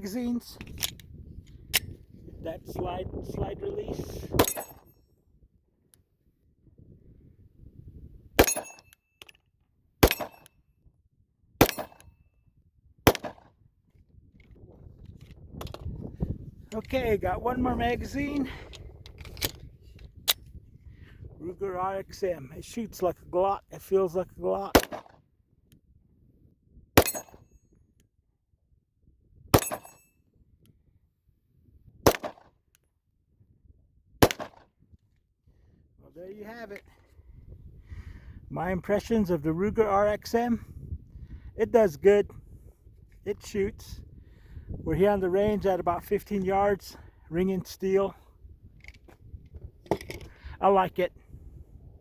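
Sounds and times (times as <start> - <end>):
metallic ring of steel target: 4.4 - 4.9, 8.4 - 8.9, 10.0 - 10.5, 11.6 - 12.0, 27.0 - 27.4, 29.6 - 30.1
pistol shots: 10.0 - 10.5, 11.6 - 12.0, 13.1 - 13.5, 24.8 - 25.1, 29.6 - 30.0, 32.1 - 32.5, 34.2 - 34.6.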